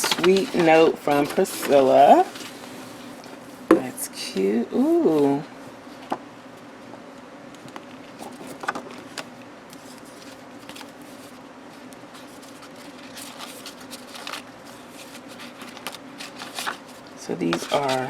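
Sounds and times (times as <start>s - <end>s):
paper rustling: 0.0s - 3.2s, 7.6s - 18.0s.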